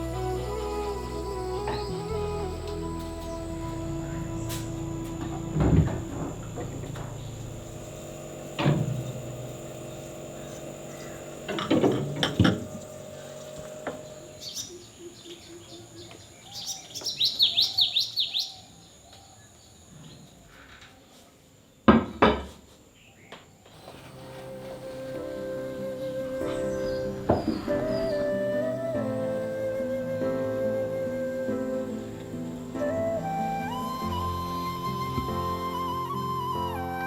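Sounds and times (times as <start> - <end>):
bird chirping: 0.2 - 20.2, 26.0 - 29.9.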